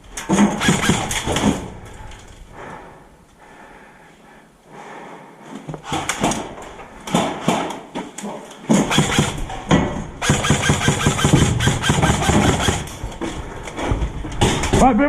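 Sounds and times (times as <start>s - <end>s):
airsoft gun firing: 0.3s - 1.6s, 8.7s - 9.5s, 10.2s - 12.9s.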